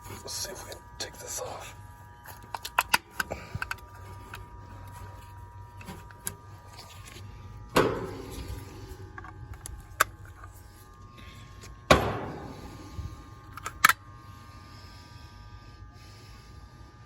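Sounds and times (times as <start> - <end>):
faint steady hum: 0.0 - 17.0
loud ringing metal strike: 11.9 - 13.1.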